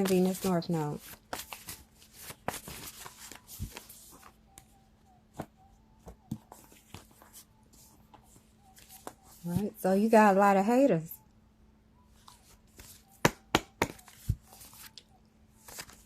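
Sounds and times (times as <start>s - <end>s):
cards tapping and clicking: 12.8s - 15.1s.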